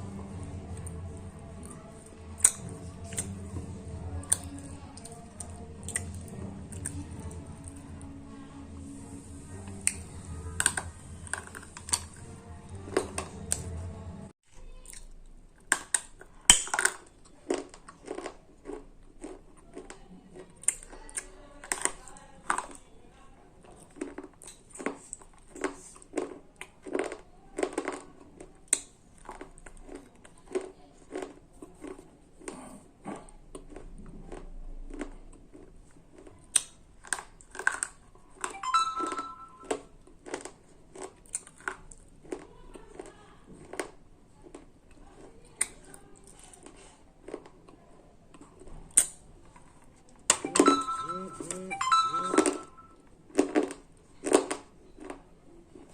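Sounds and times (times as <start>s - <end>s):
slate pencils crunching in mouth: 0.3s - 7.8s, 9.7s - 12.3s, 15.6s - 22.8s, 23.7s - 38.5s, 40.2s - 47.7s.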